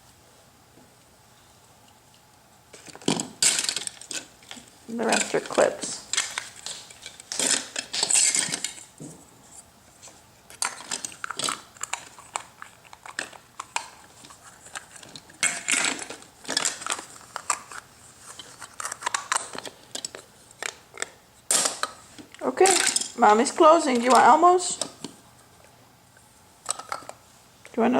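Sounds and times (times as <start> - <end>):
small clips clinking and rattling: 22.6 - 23.2.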